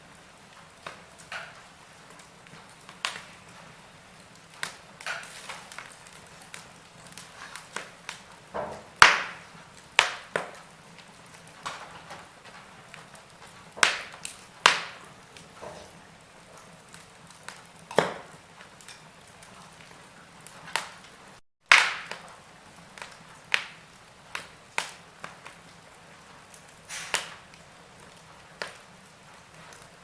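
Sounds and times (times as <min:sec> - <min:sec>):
wood fire crackling: 0:00.0 - 0:30.0
faint hiss: 0:26.8 - 0:27.5.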